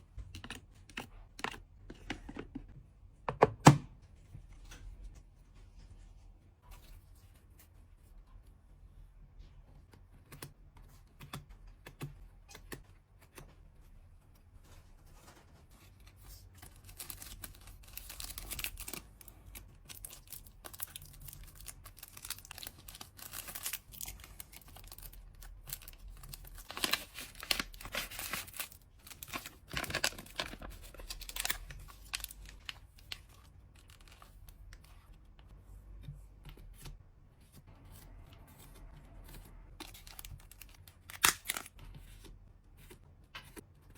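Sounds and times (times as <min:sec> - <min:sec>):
packing materials tearing and crinkling: 0:16.6 - 0:34.3, 0:39.8 - 0:41.8.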